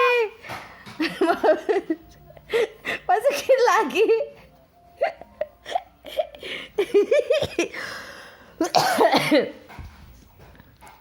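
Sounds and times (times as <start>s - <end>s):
toddler coughing: 8.6s - 9.6s.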